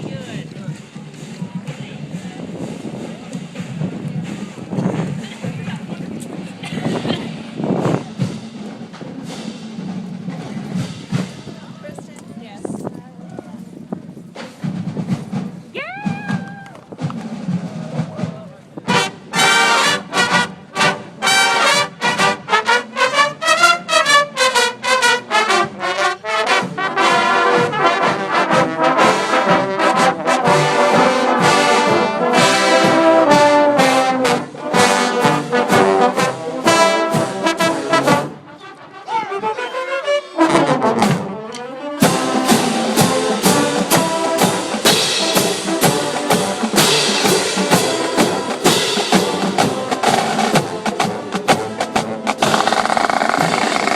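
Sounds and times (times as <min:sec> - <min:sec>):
marching band brass playing: 0:00.0 - 0:12.0, 0:17.0 - 0:53.9
sliding brass notes: 0:18.8 - 0:53.9.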